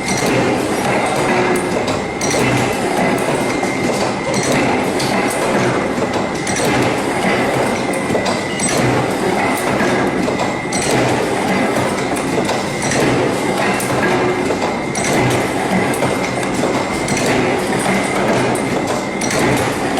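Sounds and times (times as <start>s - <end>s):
machinery running loudly: 0.0s - 19.9s
mechanical clacks: 0.0s - 19.9s.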